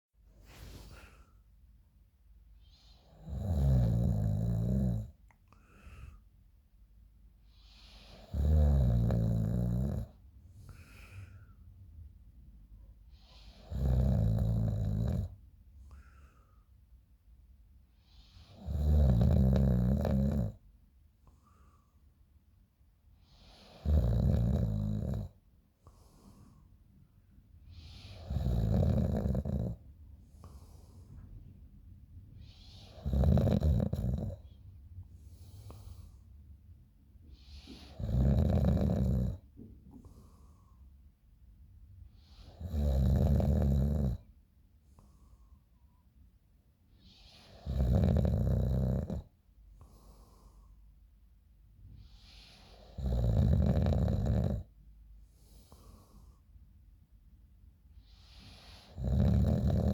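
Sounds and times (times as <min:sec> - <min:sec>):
soft breathing: 0:00.3 - 0:03.2, 0:05.3 - 0:06.6, 0:10.2 - 0:13.8, 0:15.7 - 0:17.2, 0:21.2 - 0:22.4, 0:25.6 - 0:28.4, 0:29.5 - 0:33.1, 0:34.2 - 0:38.0, 0:39.4 - 0:42.6, 0:44.7 - 0:46.2, 0:49.4 - 0:53.0, 0:54.7 - 0:57.0, 0:57.9 - 0:59.9
person snoring: 0:03.2 - 0:05.1, 0:08.2 - 0:10.1, 0:28.0 - 0:29.8, 0:58.6 - 0:59.9.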